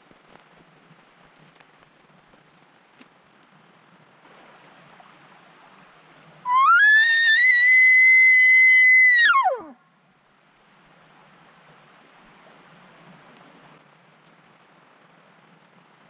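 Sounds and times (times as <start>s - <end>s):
elk bugling: 6.5s - 9.8s.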